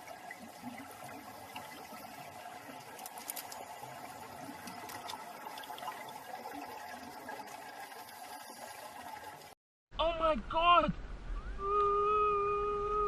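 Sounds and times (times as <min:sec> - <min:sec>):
steady watery noise: 0:00.0 - 0:09.6.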